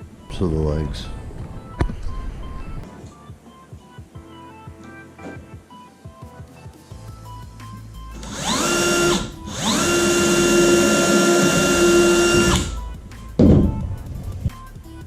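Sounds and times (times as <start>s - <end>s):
power drill driving into wood: 8.2s - 12.8s
short knock: 13.4s - 13.8s.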